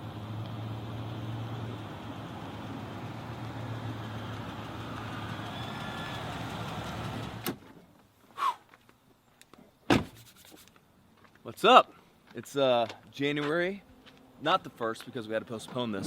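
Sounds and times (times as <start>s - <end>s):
vehicle engine hum: 0.0s - 7.6s.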